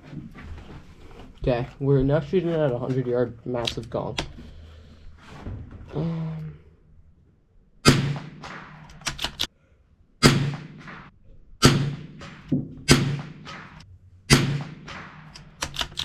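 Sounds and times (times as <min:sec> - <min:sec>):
rifle shots: 0:07.8 - 0:09.4, 0:10.2 - 0:15.8.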